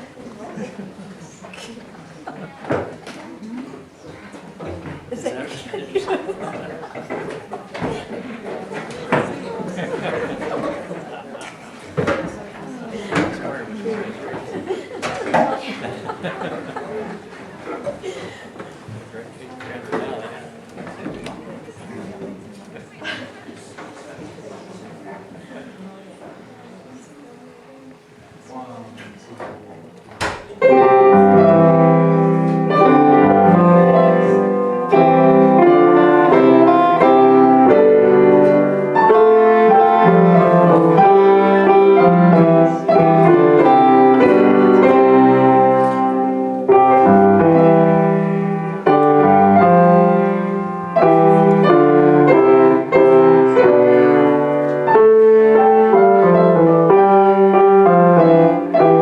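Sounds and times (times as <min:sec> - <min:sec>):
classical piano piece: 0:30.6 - 0:59.0.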